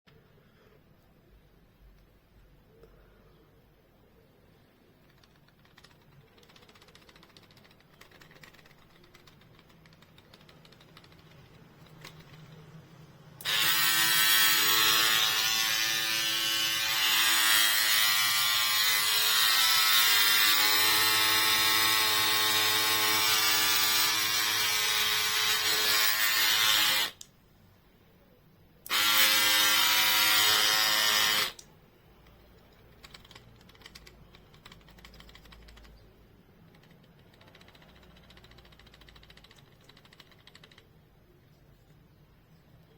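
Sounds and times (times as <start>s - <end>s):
hair clipper buzzing: 13.4s - 27.2s, 28.9s - 31.6s.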